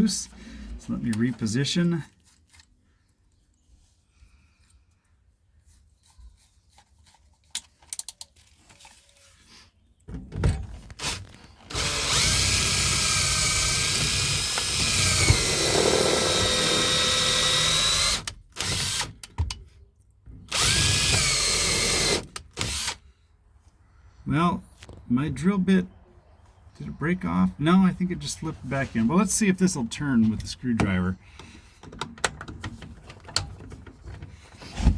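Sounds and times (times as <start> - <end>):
electric drill whining: 11.0 - 19.2, 20.5 - 23.0.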